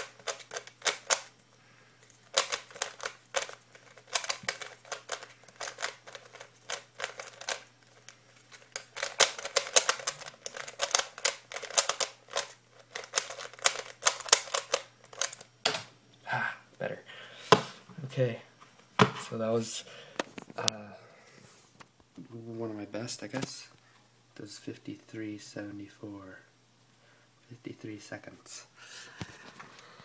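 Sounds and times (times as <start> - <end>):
puzzle cube plastic clicks: 0.0 - 1.3, 2.2 - 15.5.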